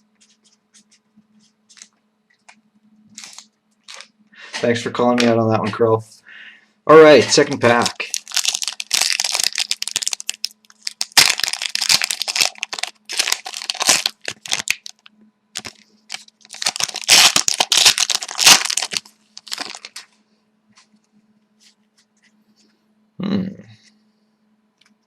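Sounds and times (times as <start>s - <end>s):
faint low hum: 0.0s - 25.0s
wrapper tearing and crinkling: 3.1s - 4.1s, 7.1s - 20.1s.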